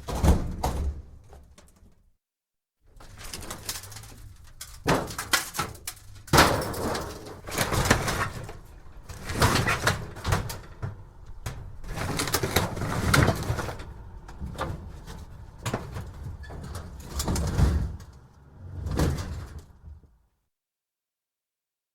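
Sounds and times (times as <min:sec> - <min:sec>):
metal scrap clattering and scraping: 0:03.0 - 0:19.8.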